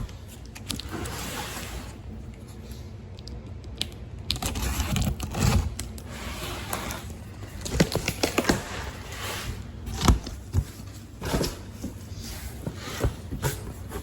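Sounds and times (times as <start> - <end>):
packaging clicking and crinkling: 6.9 - 9.1
packaging rustling: 6.9 - 14.0.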